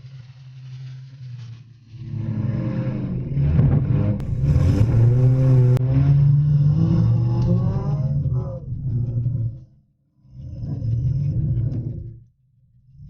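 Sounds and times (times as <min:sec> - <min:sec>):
car engines revving hard: 0:02.2 - 0:09.2.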